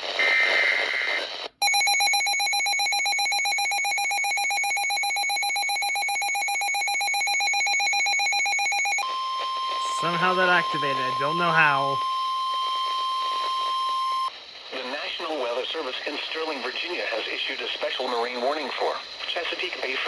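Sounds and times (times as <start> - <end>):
rapidly trilling alarm beep: 1.6 - 14.3
data burst tones: 3.6 - 15.0
steady alert tone: 9.8 - 12.0.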